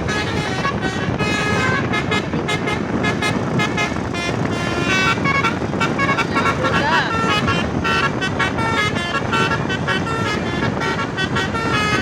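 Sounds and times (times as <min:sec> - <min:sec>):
musical horn playing notes: 0:00.0 - 0:12.0
traffic noise: 0:00.0 - 0:12.0.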